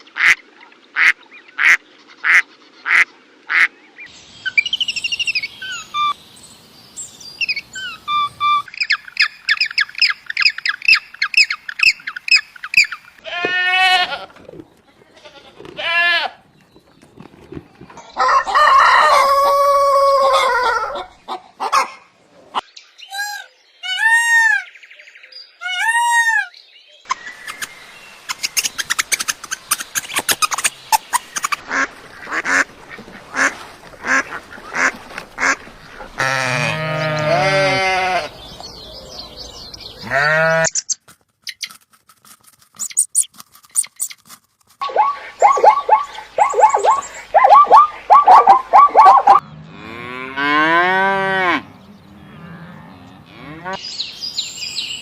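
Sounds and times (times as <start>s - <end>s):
bird calls: 0.0s - 13.2s, 22.6s - 41.8s, 44.8s - 49.6s
rapid clicking bird chatter: 27.1s - 31.7s.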